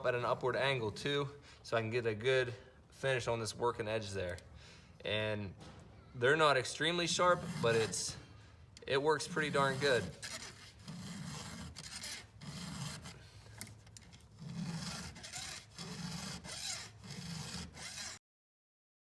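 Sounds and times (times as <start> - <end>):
file rasping on chain teeth: 7.0 - 8.2, 9.1 - 18.2.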